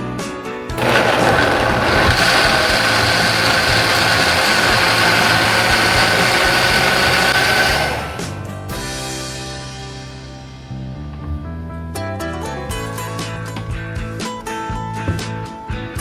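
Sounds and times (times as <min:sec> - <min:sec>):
blender motor whining: 0:00.8 - 0:08.4.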